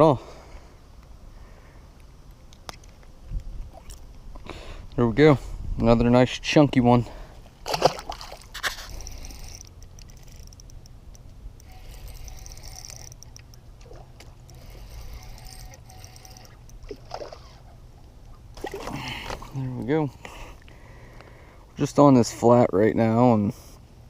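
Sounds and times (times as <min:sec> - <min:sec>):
water trickling and splashing: 0:07.6 - 0:10.4, 0:11.7 - 0:19.7.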